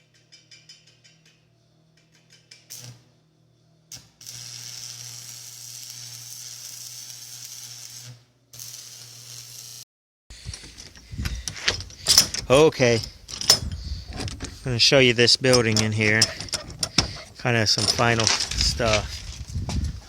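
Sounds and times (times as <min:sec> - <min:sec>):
arc welder sizzling: 0:02.7 - 0:03.1, 0:03.9 - 0:09.8.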